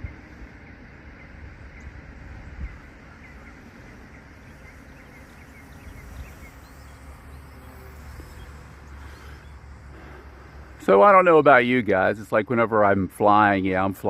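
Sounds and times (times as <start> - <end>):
wind rumble on microphone: 0.0 - 6.8
small bird chirping: 0.0 - 9.8.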